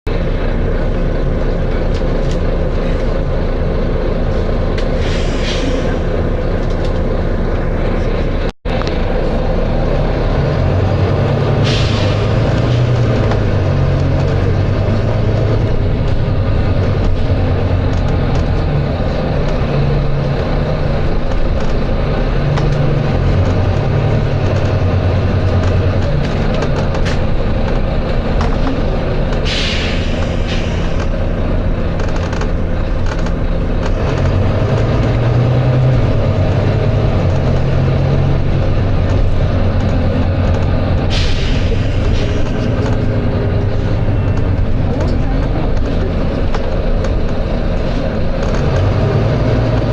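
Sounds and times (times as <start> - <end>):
bus diesel engine running: 0.1 - 49.9
pneumatic air hisses: 5.0 - 6.0, 29.4 - 31.0, 41.1 - 42.4.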